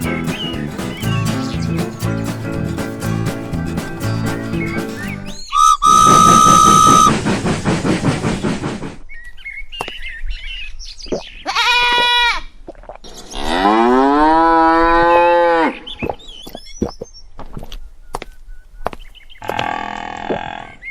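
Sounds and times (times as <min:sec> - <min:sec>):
rhythmic chugging: 0:00.0 - 0:09.0
whistle-like tone: 0:03.7 - 0:07.2
cow mooing: 0:19.4 - 0:20.8.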